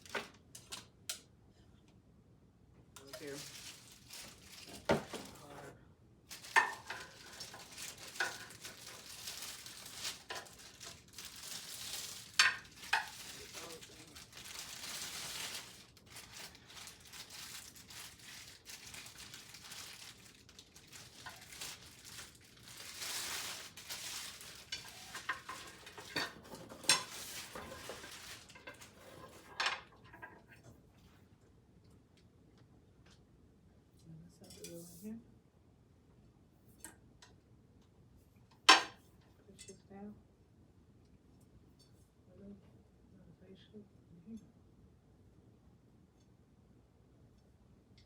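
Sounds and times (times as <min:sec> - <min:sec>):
rustling of packaging: 0:00.0 - 0:01.0, 0:03.0 - 0:30.0.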